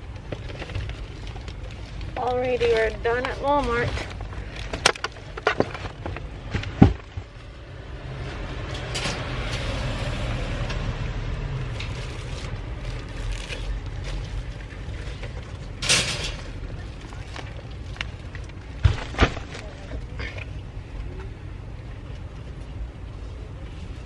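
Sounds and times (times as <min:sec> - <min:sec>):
rustling: 0:00.0 - 0:07.6, 0:11.6 - 0:20.6
car rumbling: 0:00.0 - 0:24.0.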